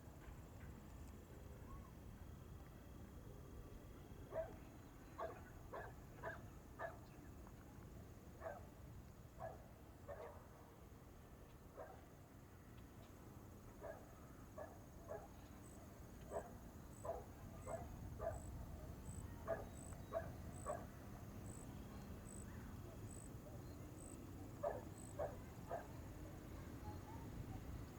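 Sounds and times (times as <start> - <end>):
dog barking faintly: 4.3 - 7.1, 8.4 - 8.8, 9.4 - 10.8, 11.7 - 12.2, 13.8 - 21.6, 24.6 - 27.8.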